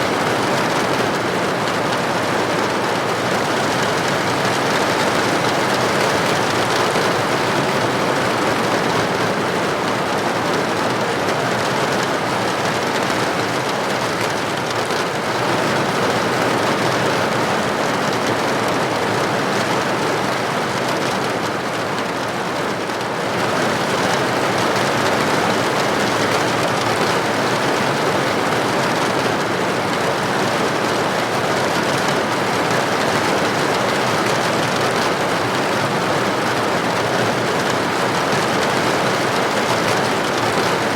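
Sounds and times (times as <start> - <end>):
steady rain heard indoors: 0.0 - 40.9.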